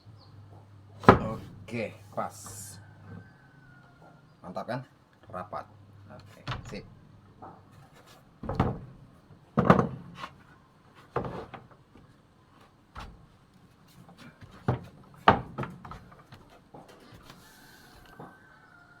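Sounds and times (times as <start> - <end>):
wood knocking on wood: 0.6 - 3.3, 6.2 - 10.4, 14.1 - 16.9
wood rubbing: 0.9 - 3.4, 5.9 - 18.3.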